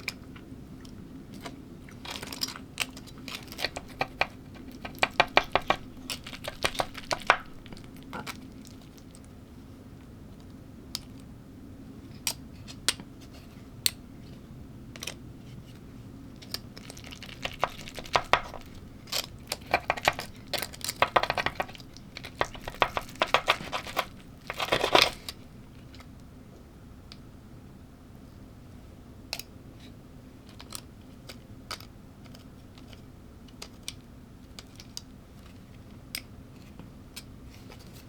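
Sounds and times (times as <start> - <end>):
crunching while eating: 0.0 - 9.3, 16.4 - 26.2.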